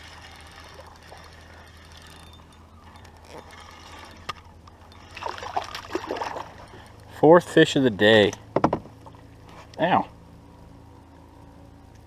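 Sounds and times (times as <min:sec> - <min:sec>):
fishing reel gears clicking: 0:00.0 - 0:07.0.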